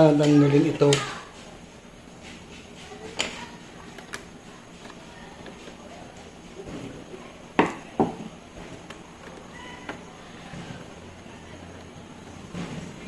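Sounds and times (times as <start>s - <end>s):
sharp knocks on plastic: 7.6s - 8.3s.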